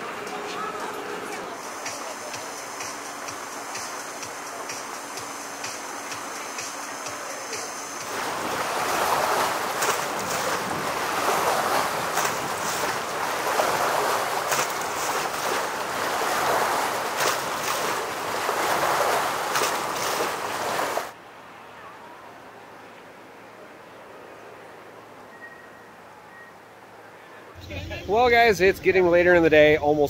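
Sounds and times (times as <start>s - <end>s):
rushing splashing water: 7.9s - 21.2s.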